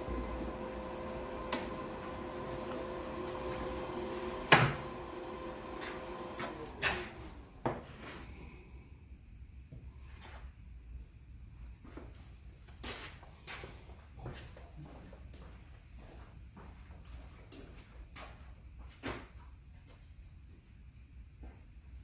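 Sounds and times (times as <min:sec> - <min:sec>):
welder cooling fan humming: 0:00.0 - 0:08.7.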